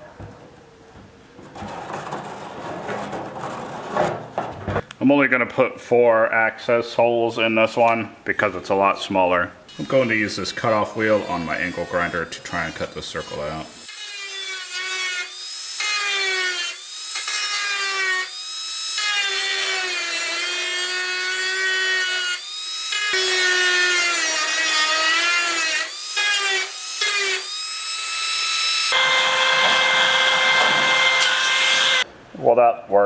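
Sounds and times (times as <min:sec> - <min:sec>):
angle grinder cutting metal: 0:09.7 - 0:32.1.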